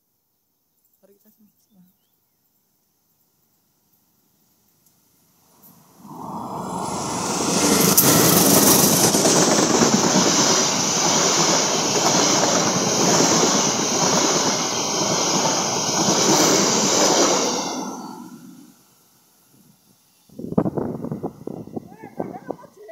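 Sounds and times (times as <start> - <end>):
train rumbling over bridge: 6.0 - 18.8.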